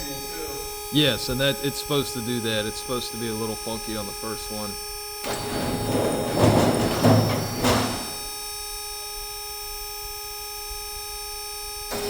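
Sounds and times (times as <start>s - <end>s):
machine electric hum: 0.0s - 12.0s
noisy clatter with sharp hits: 5.2s - 8.3s.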